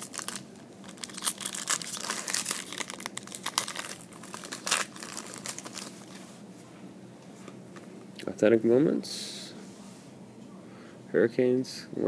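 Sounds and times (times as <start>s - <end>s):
trading cards rustling: 0.0s - 6.2s.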